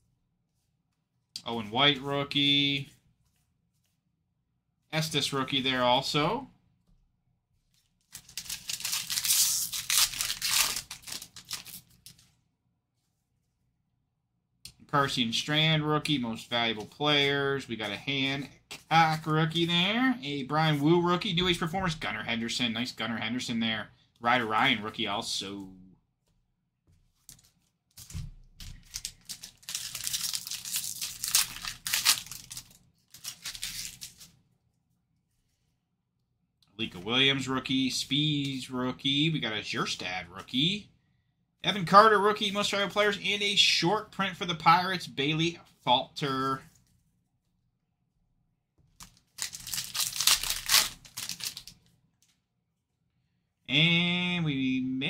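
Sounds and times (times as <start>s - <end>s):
wrapper tearing and crinkling: 8.1s - 12.2s, 28.8s - 34.3s, 49.0s - 51.9s.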